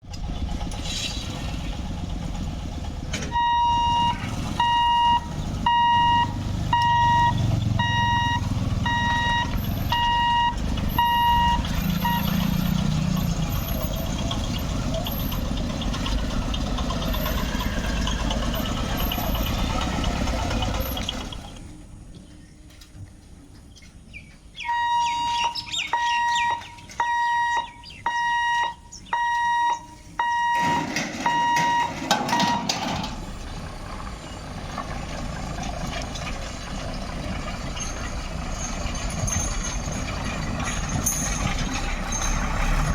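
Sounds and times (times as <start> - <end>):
vehicle engines running: 0.0 - 42.9
electronic warning beeper: 3.3 - 12.4, 24.6 - 32.7.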